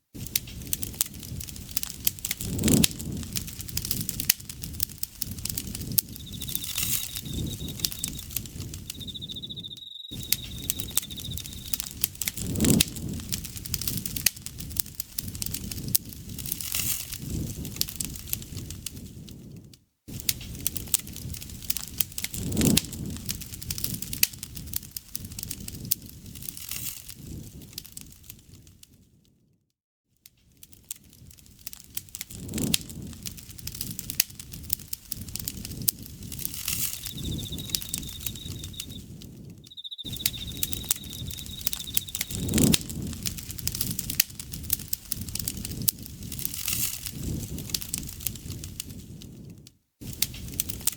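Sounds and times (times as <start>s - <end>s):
campfire crackling and popping: 0.2s - 28.7s, 30.6s - 50.9s
insect trilling: 5.8s - 12.1s, 36.5s - 42.7s.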